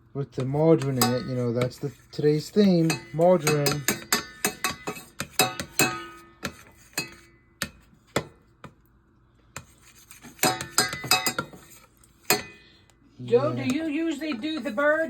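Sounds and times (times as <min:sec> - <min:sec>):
utensil clinking against dishes: 0:00.4 - 0:07.8, 0:10.3 - 0:12.7.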